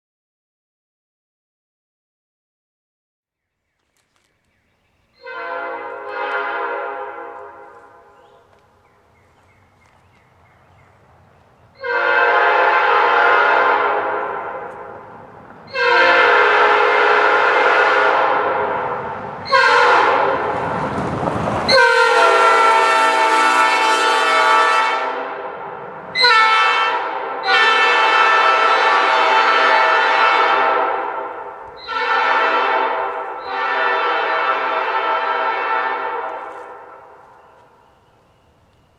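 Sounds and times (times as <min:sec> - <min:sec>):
railroad air horn blasts: 0:05.2 - 0:08.5, 0:11.8 - 0:20.8, 0:21.7 - 0:37.5.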